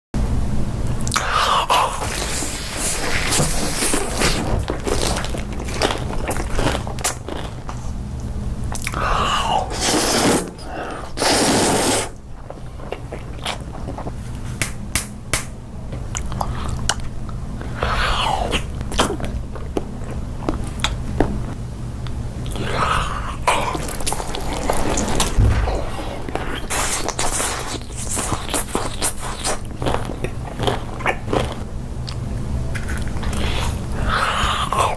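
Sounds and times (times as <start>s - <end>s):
crunchy chewing: 1.0s - 8.0s, 26.4s - 34.9s.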